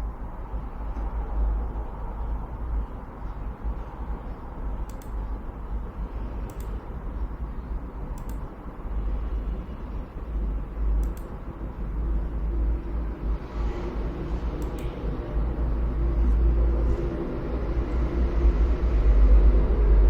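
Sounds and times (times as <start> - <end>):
computer cooling fans running: 0.0 - 20.0
faint clicks: 4.8 - 5.3, 6.4 - 6.8, 8.1 - 8.5, 11.0 - 11.4, 14.6 - 15.0.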